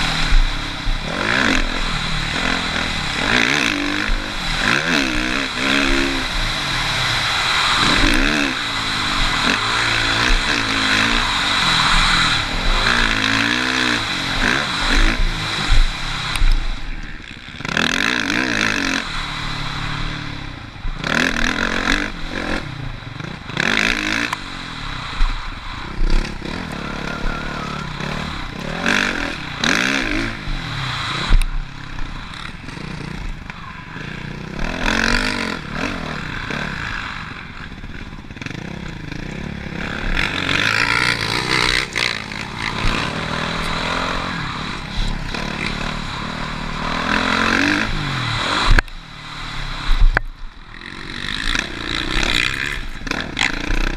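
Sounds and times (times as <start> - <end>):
motocross bike engine revving: 0.0 - 53.9
rushing noise: 0.0 - 53.9.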